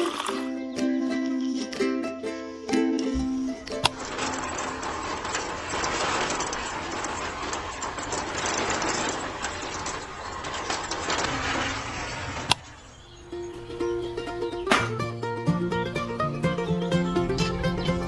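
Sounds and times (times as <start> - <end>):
small hard pieces tumbling: 3.8 - 13.0.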